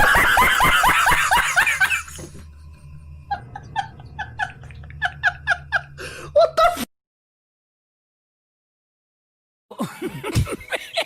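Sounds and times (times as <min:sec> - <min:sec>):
loud rapid laughter: 0:00.0 - 0:02.2
higher-pitched laugh: 0:00.0 - 0:02.3, 0:03.3 - 0:06.9, 0:09.7 - 0:11.0.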